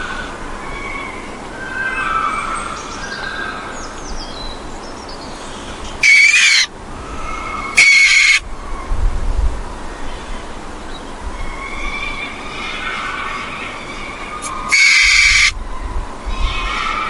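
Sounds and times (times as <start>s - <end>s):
faint wavering bird calls: 5.6s - 8.9s, 11.3s - 17.0s
harsh bird screeches: 6.0s - 6.7s, 7.7s - 8.4s, 14.4s - 15.6s.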